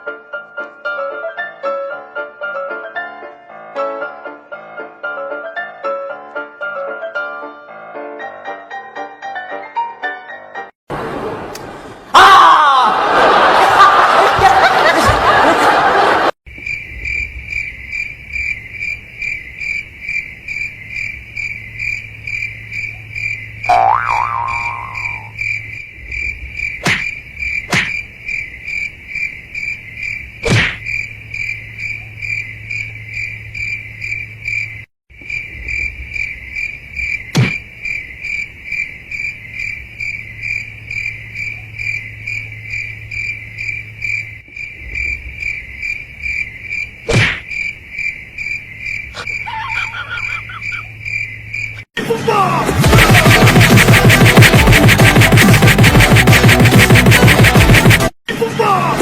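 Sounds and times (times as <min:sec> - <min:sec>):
cricket chirping: 0:16.5 - 0:51.9.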